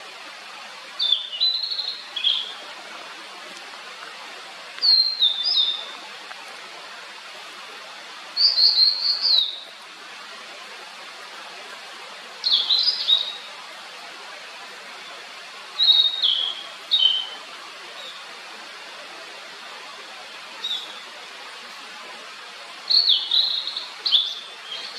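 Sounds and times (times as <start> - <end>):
steady hiss: 0.0 - 24.9
bird singing whistled notes: 1.0 - 2.5, 4.8 - 5.9, 8.4 - 9.7, 12.4 - 13.5, 15.8 - 17.4, 20.6 - 21.0, 22.9 - 24.9.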